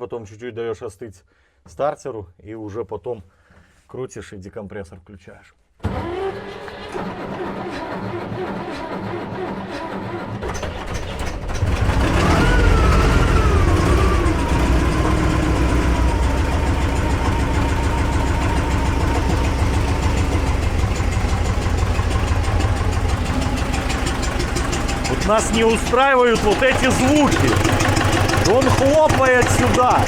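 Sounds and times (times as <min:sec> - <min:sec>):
tractor diesel engine starting: 0:05.8 - 0:30.0
engine popping into intake: 0:11.2 - 0:30.0.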